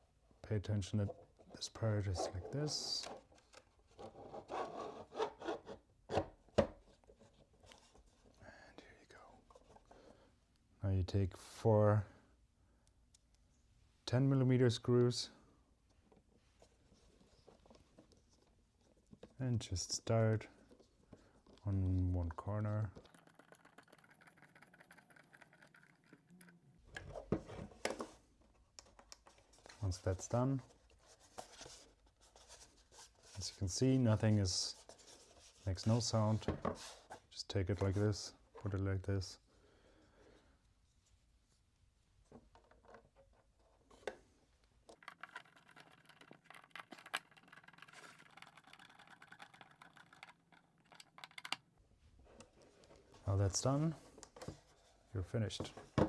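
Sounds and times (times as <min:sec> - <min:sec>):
plastic parts clicking and scraping: 0:22.6 - 0:28.2, 0:44.8 - 0:51.7.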